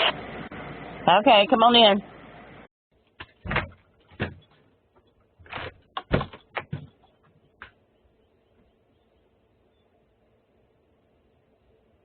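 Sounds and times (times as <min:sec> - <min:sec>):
door knocks and clunks: 0:03.2 - 0:04.6, 0:05.5 - 0:07.0.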